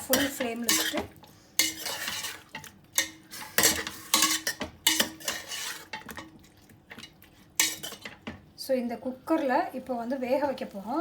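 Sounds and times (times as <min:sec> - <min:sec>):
spoon scraping and clinking pot: 0:00.0 - 0:08.3.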